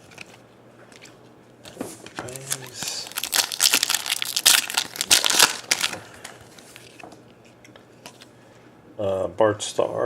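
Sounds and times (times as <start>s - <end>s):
foil wrapper crinkling: 2.2s - 7.0s.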